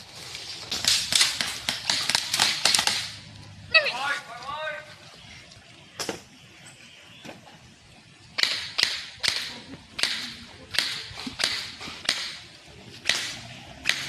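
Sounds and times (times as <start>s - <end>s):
airsoft guns firing: 0.7s - 3.2s, 8.4s - 14.0s.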